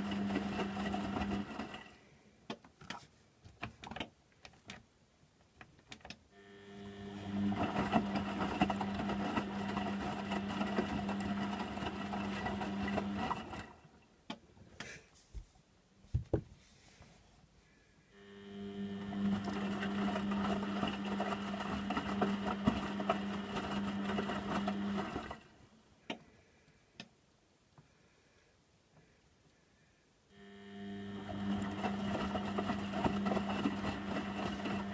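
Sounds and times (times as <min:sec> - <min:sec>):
washing machine motor humming: 0:00.0 - 0:01.9, 0:06.4 - 0:14.0, 0:18.2 - 0:25.7, 0:30.3 - 0:34.9.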